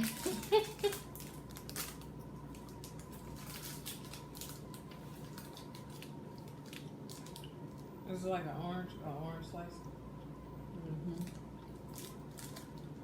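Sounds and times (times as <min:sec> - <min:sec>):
plastic wrapper crinkling: 0:00.0 - 0:07.9, 0:11.2 - 0:13.0.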